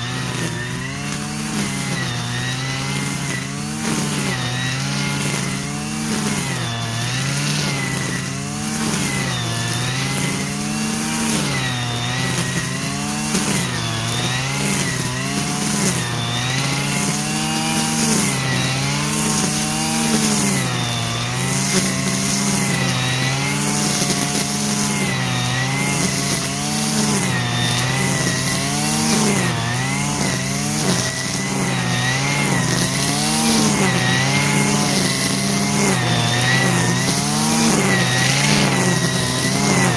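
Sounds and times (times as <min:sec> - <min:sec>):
brushcutter engine rising and falling: 0:00.0 - 0:39.9.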